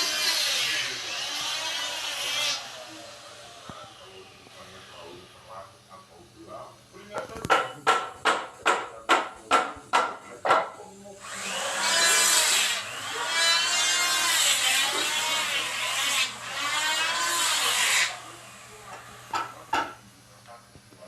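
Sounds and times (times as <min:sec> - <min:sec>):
saw cutting wood: 0:00.0 - 0:05.4, 0:11.2 - 0:19.6.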